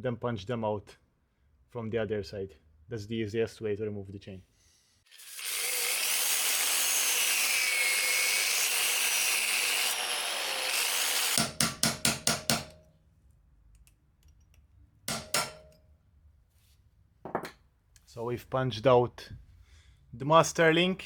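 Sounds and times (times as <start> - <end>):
grinder whining: 5.1 - 11.4.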